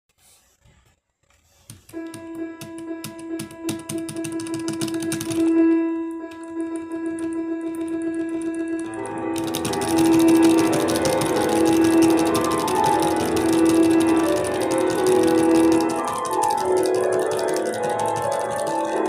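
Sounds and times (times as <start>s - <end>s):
rapid sharp clicks: 3.0s - 5.6s, 6.3s - 19.0s
music with sustained note: 5.6s - 19.0s.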